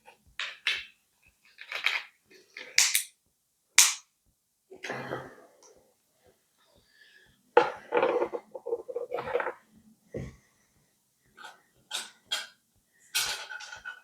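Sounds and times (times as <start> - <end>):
sharp bright cracks: 3.8 - 4.1.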